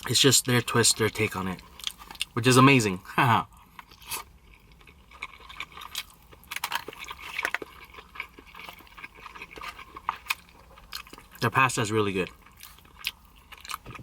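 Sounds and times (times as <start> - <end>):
person chewing pasta: 0.0 - 2.4, 3.5 - 11.4, 12.3 - 14.0.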